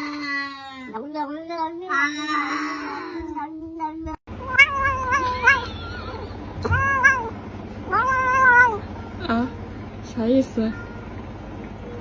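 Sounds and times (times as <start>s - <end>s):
cat meowing: 0.0s - 8.8s.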